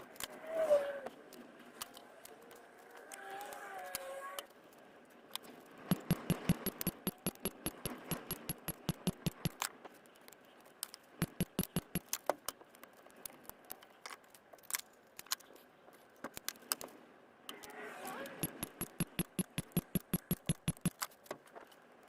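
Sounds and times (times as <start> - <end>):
rapid sharp clicks: 5.9 - 9.7, 11.2 - 12.3, 18.4 - 21.2.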